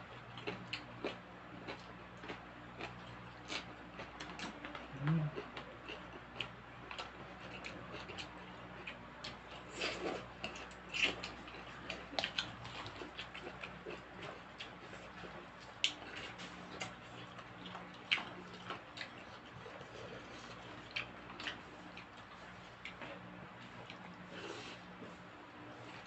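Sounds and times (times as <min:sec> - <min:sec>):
chewing: 0:00.0 - 0:26.0
faint steady hum: 0:00.0 - 0:26.0.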